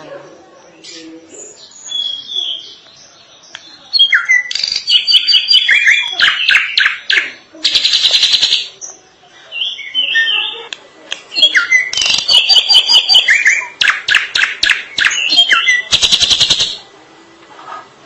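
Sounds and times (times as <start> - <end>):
bird singing rattles and whistles: 3.9 - 8.8, 11.4 - 16.8.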